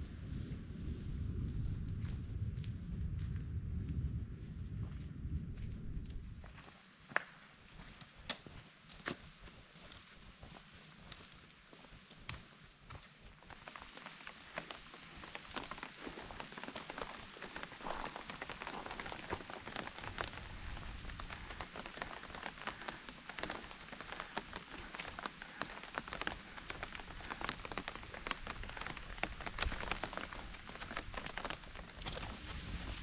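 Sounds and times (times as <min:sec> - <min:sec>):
rain falling: 0:13.5 - 0:33.0
raindrop taps: 0:14.6 - 0:32.5.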